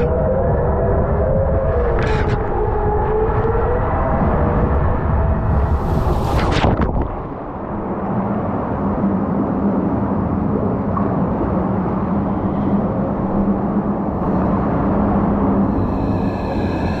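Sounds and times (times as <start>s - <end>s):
high whine: 12.7s - 17.0s.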